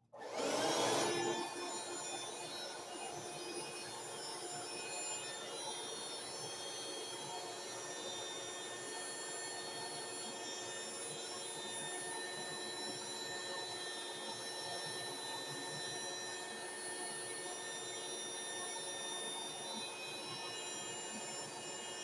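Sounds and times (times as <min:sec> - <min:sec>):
hand vacuum running: 0:00.2 - 0:02.0.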